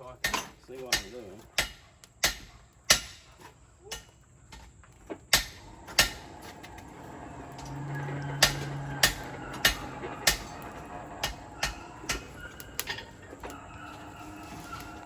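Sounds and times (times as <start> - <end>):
hammer striking steel on anvil: 0.2 - 3.3, 5.4 - 6.3, 8.3 - 13.1.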